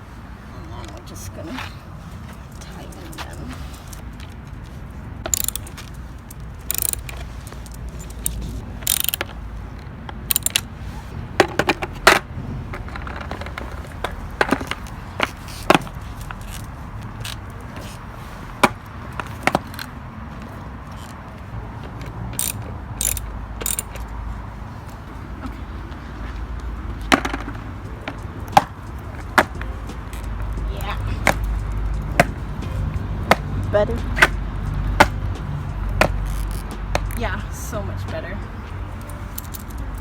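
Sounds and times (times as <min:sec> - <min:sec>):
wrench clicking on nuts: 0:05.2 - 0:10.7, 0:22.3 - 0:24.2, 0:35.0 - 0:37.2, 0:39.0 - 0:40.0.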